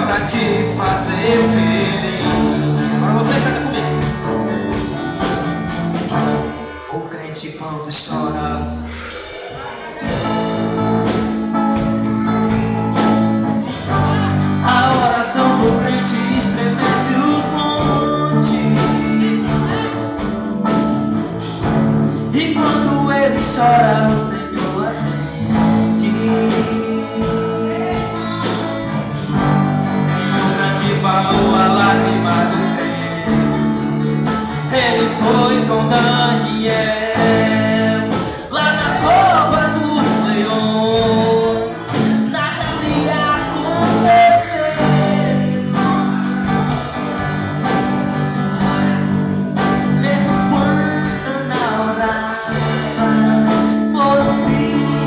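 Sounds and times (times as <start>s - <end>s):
church band playing gospel: 0.0s - 55.0s
guitar: 0.0s - 55.0s
person singing: 0.0s - 55.0s.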